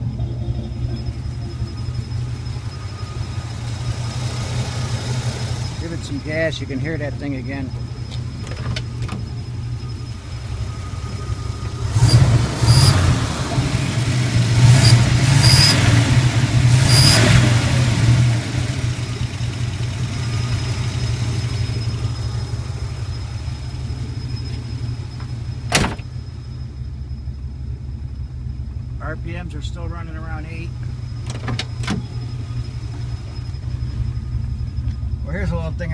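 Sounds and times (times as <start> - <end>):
engine revving: 0.0 - 8.4, 9.7 - 25.2
car engine idling: 0.0 - 35.9.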